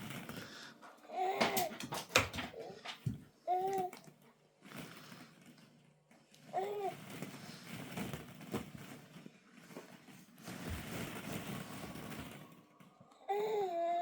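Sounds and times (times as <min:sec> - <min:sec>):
plastic balls rattling: 0:00.0 - 0:05.8, 0:06.4 - 0:13.0
baby vocal sound: 0:13.2 - 0:14.0.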